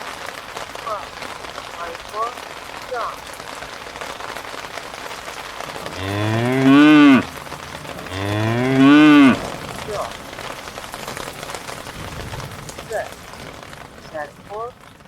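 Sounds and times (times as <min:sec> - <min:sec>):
steady hiss: 0:00.0 - 0:15.0
cow mooing: 0:05.8 - 0:09.6.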